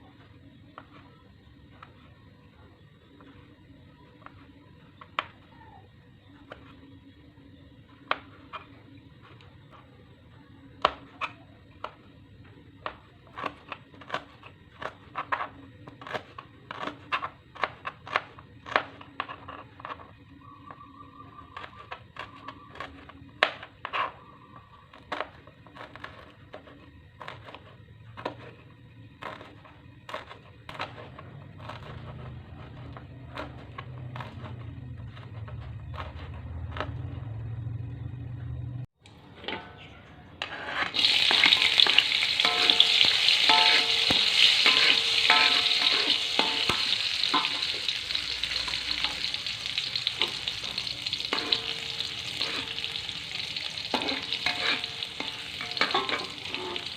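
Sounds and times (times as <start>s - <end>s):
knife striking cutting board: 41.2s - 47.8s.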